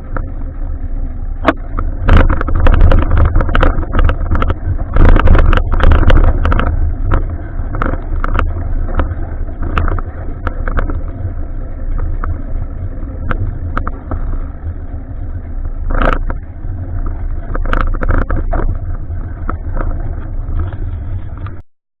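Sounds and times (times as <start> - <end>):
wind and road rumble: 0.0 - 21.7
bike clicks and rattles: 1.4 - 21.6.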